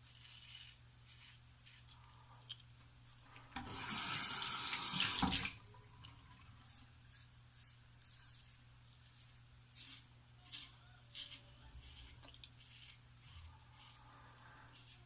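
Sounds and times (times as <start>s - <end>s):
water tap running into sink: 3.6s - 5.6s.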